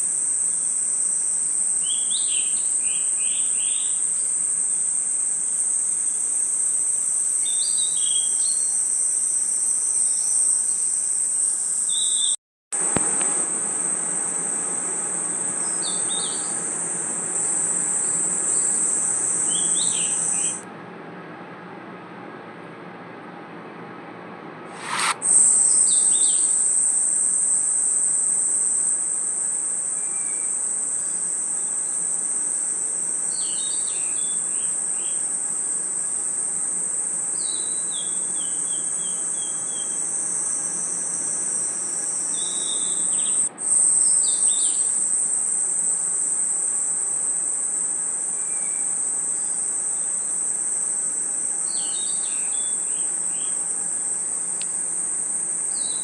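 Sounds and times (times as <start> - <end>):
crickets trilling: 0.0 - 20.6, 24.8 - 56.0
bird call chirps: 24.8 - 26.6.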